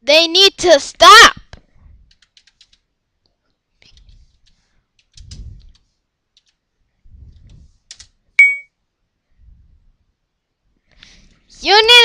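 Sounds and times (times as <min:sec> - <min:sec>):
keyboard typing: 0:02.0 - 0:02.9, 0:03.8 - 0:06.7, 0:07.3 - 0:08.6
short high-pitched tone: 0:08.4 - 0:08.7.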